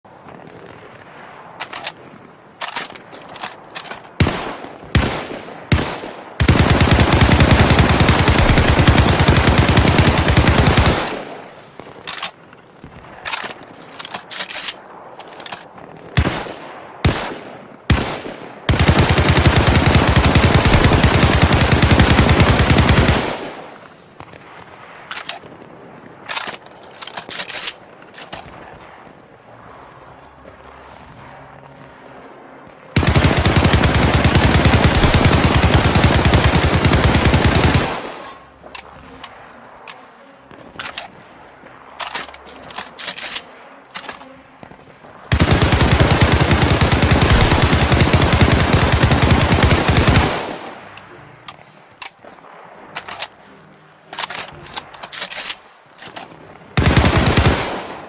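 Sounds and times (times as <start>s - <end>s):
submachine gun firing: 2.6s - 11.4s, 16.2s - 23.7s, 33.0s - 38.4s, 45.3s - 50.7s, 56.8s - 58.0s.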